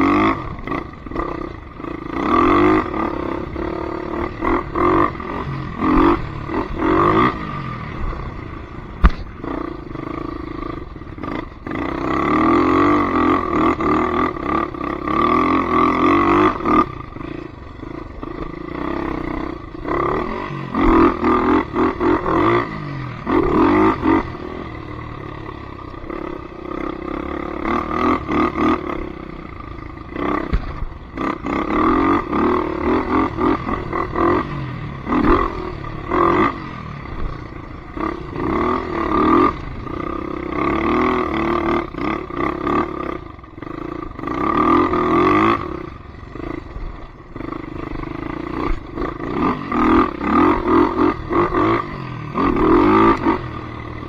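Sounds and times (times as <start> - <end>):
atv engine revving: 0.0 - 54.0.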